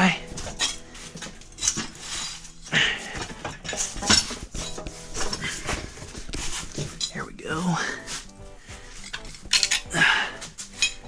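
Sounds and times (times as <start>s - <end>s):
tire spoons clinking on rim: 9.0s - 9.9s.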